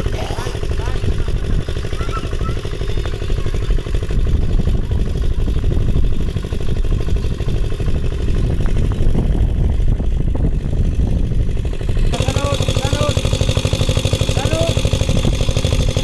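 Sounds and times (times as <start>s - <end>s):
engine running steadily: 0.0s - 16.0s.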